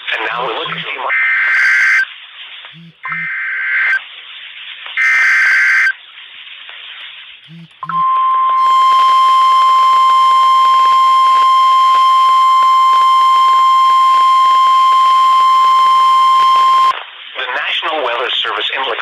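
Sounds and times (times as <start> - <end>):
steady warning alarm tone: 0.4 - 2.0, 2.8 - 4.0, 7.5 - 16.9
harsh digital data burst: 0.4 - 2.1, 2.8 - 4.0.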